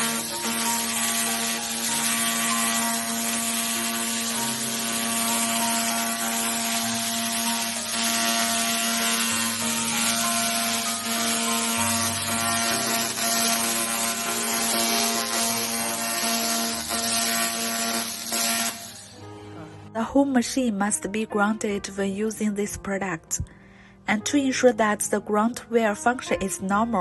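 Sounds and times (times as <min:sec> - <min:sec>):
laser cleaning machine hum: 0:00.0 - 0:19.2.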